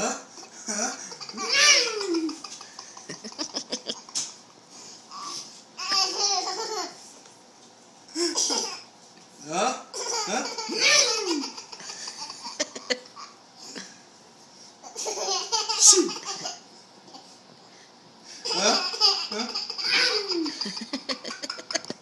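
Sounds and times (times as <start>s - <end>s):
small child laughing: 0.7s - 4.4s, 5.8s - 7.0s, 10.0s - 13.4s, 14.9s - 16.6s, 18.4s - 22.0s.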